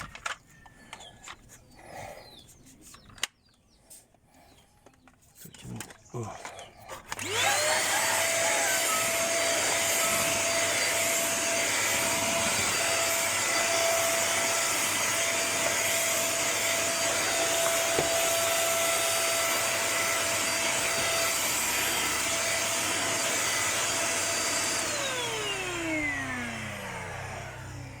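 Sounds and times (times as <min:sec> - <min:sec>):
vacuum cleaner motor whine: 0:07.1 - 0:28.0.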